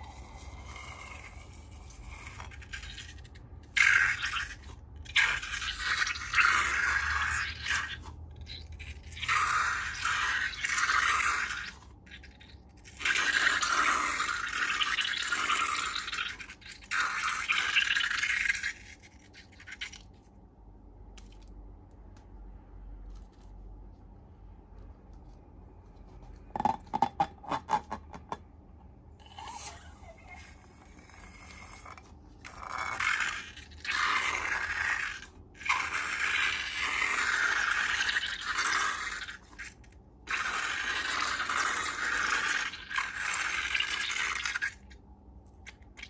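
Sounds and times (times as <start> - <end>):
scratchy scraping of slime: 0.0 - 15.4, 29.2 - 43.8
faint low hum: 18.1 - 36.6.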